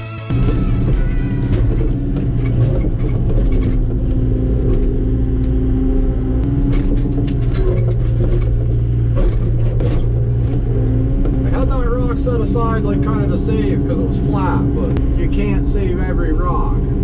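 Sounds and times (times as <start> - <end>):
steady higher tone: 0.0 - 3.3
excavator diesel engine running: 0.0 - 17.0.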